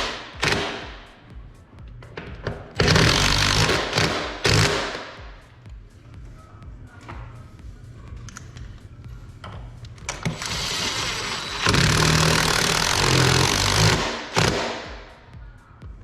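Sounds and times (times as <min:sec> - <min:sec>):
power drill drilling into wood: 0:10.4 - 0:14.5.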